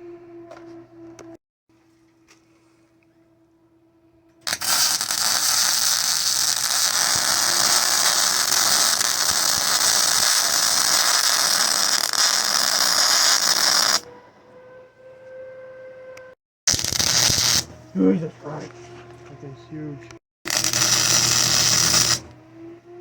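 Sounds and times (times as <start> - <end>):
arc welding crackling hiss: 4.4 - 14.0, 16.7 - 17.8, 20.5 - 22.3.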